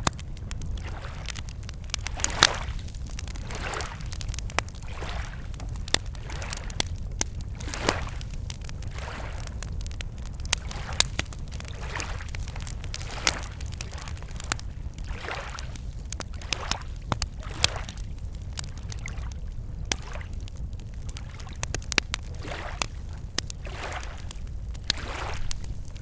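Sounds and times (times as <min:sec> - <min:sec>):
steady low rumble: 0:00.0 - 0:15.1
campfire crackling and popping: 0:00.0 - 0:26.0
small waves lapping at shore: 0:02.0 - 0:06.9, 0:07.6 - 0:09.5, 0:10.6 - 0:14.2, 0:15.1 - 0:18.0, 0:22.4 - 0:23.0, 0:23.6 - 0:25.8.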